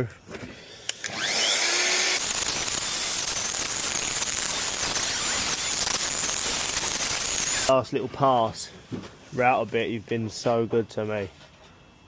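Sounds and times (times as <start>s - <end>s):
router cutting timber: 1.0s - 7.7s.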